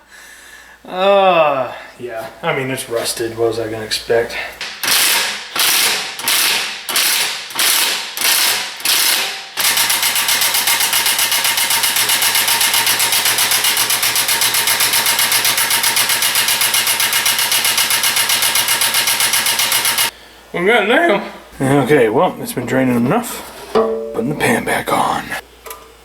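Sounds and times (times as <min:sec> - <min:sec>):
ratchet wrench clicking: 0:04.7 - 0:20.2.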